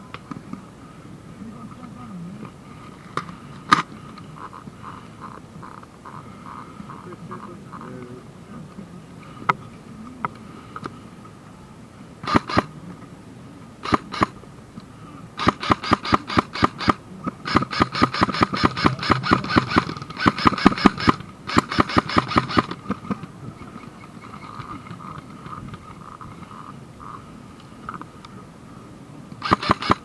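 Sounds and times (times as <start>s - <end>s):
airsoft gun firing: 12.2s - 12.7s, 13.8s - 14.4s, 15.4s - 23.2s, 29.4s - 30.0s.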